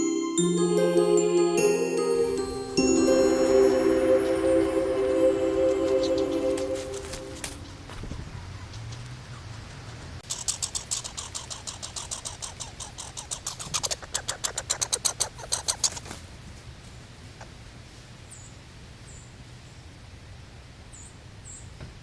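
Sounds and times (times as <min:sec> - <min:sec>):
squirrel chattering: 0:08.5 - 0:16.2.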